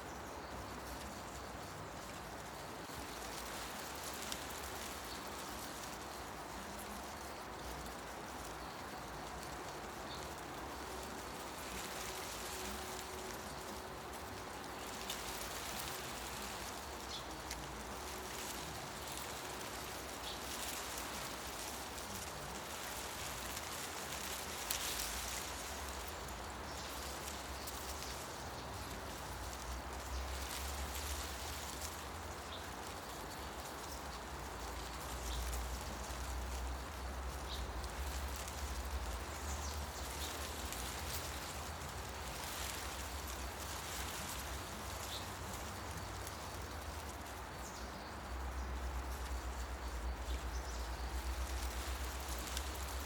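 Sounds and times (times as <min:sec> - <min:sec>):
wind rustling tree leaves: 0:00.0 - 0:53.0.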